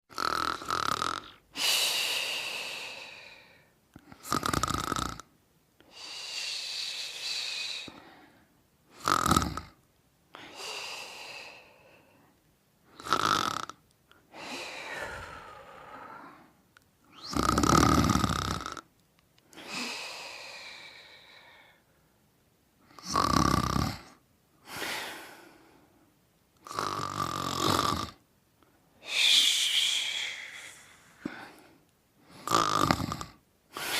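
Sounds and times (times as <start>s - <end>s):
person snoring: 0.1s - 5.3s, 8.9s - 9.8s, 12.9s - 18.9s, 22.9s - 25.6s, 26.6s - 28.2s, 29.0s - 33.9s.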